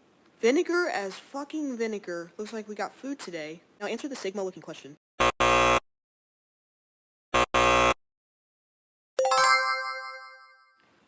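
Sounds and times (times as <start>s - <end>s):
buzzer blip and flat buzz: 5.2s - 5.8s, 7.3s - 8.0s.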